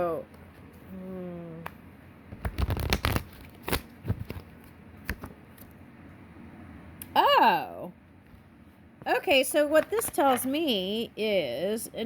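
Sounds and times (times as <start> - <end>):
cards being shuffled: 2.3 - 5.7.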